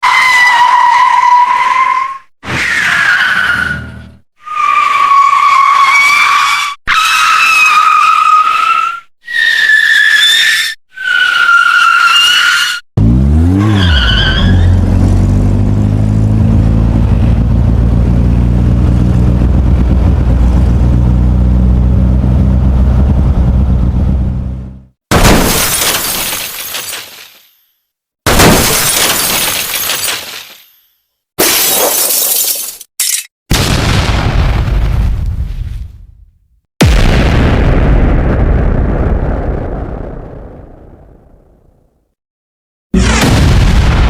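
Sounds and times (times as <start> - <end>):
car tyres squealing: 0.0 - 15.2.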